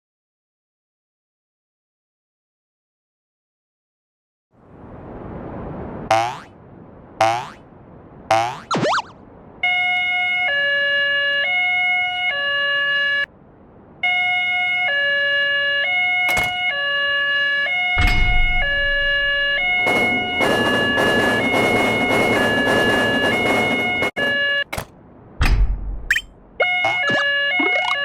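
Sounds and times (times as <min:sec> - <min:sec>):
electronic two-tone siren: 0:08.3 - 0:13.3, 0:14.0 - 0:24.9, 0:26.1 - 0:28.0.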